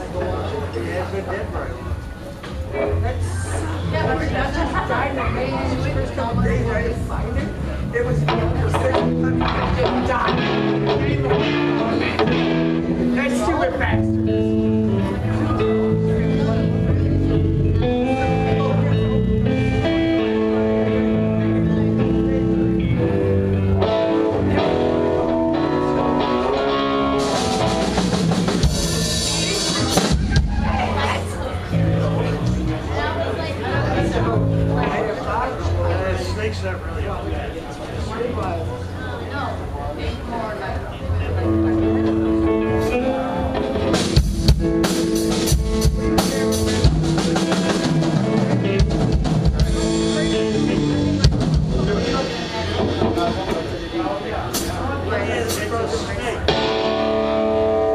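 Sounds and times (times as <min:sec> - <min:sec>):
electric guitar chords: 0:01.9 - 0:35.8, 0:41.1 - 0:57.9
drum kit: 0:07.4 - 0:32.8, 0:42.1 - 0:57.9.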